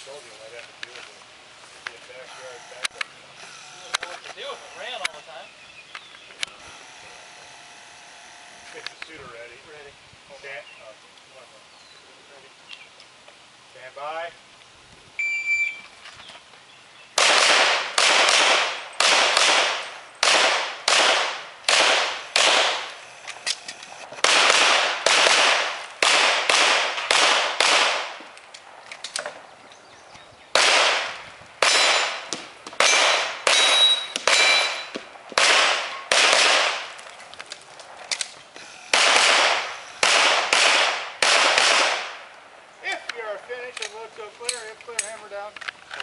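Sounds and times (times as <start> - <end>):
shot timer beep: 15.2 - 15.8
pistol fired in fast strings: 17.2 - 22.9.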